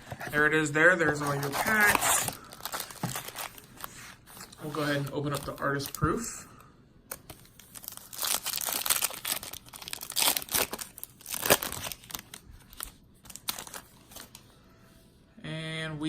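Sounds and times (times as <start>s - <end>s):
plastic wrapper tearing and crinkling: 0.9s - 6.2s, 7.1s - 14.4s.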